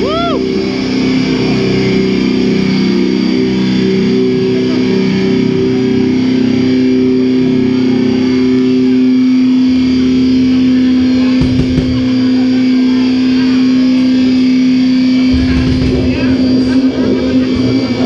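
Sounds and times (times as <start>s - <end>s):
distorted electric guitar note: 0.0s - 18.0s
low bass rumble: 5.7s - 18.0s
sudden thud: 11.4s - 12.2s.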